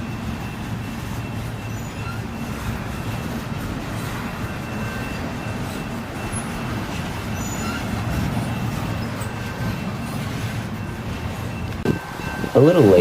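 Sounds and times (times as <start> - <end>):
train wheels rumbling on rail: 0.0 - 13.0
faint high steady tone: 8.4 - 13.0.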